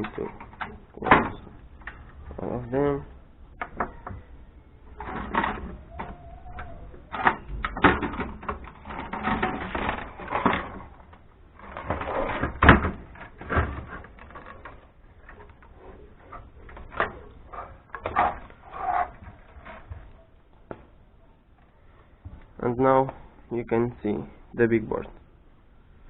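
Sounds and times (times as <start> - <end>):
metal parts clicking and rattling: 4.9 - 20.1.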